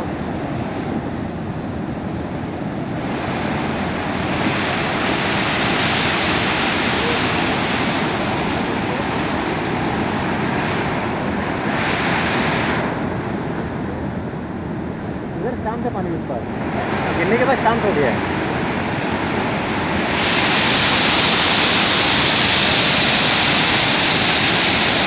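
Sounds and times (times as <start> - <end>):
waterfall rushing: 3.9 - 10.7, 16.4 - 25.0.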